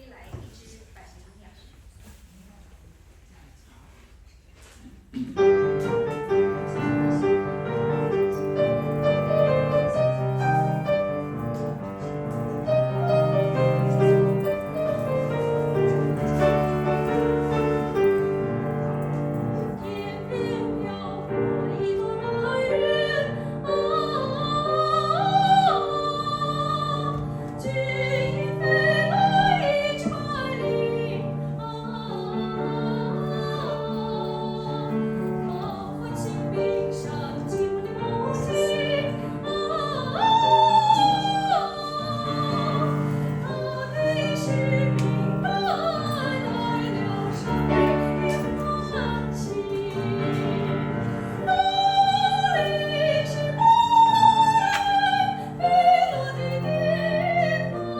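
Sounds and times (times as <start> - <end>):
piano accompaniment: 5.3 - 57.9
soprano singing with vibrato: 19.3 - 57.9.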